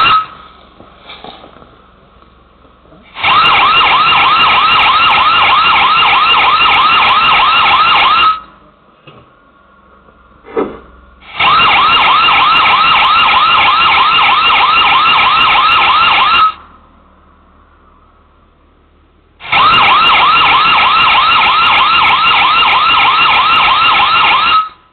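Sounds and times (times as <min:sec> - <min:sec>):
warbling electronic alarm siren: 0:00.0 - 0:00.4, 0:03.1 - 0:08.6, 0:11.2 - 0:16.8, 0:19.4 - 0:24.9.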